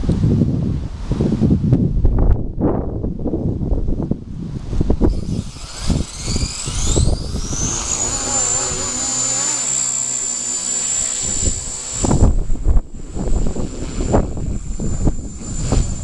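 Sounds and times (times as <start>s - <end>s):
wind buffeting microphone: 0.0s - 16.0s
high whine: 4.8s - 16.0s.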